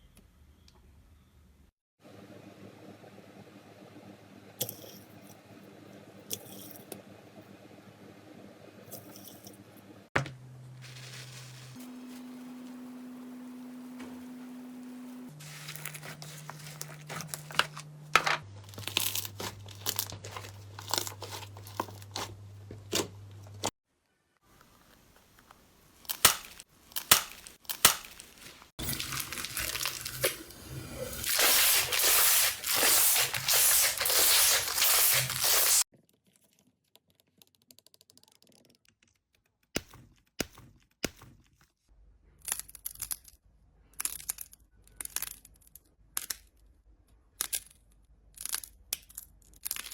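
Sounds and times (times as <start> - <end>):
slime crackling and squelching: 26.0 - 35.8.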